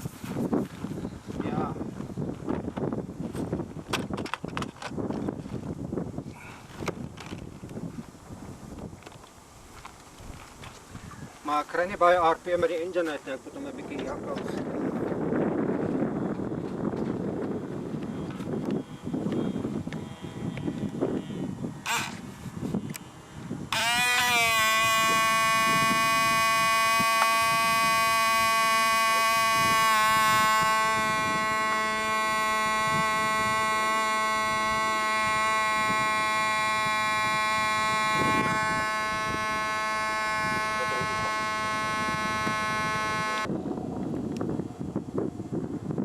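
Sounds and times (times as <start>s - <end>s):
model helicopter engine whine: 14.6s - 46.0s.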